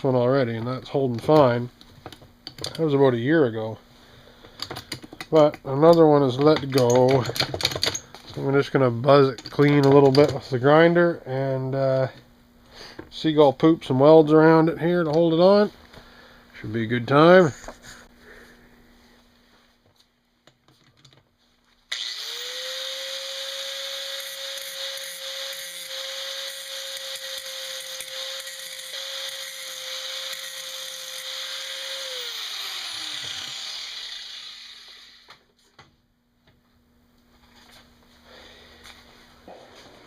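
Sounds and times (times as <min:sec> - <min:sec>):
handheld grinder whining: 0:21.9 - 0:35.4.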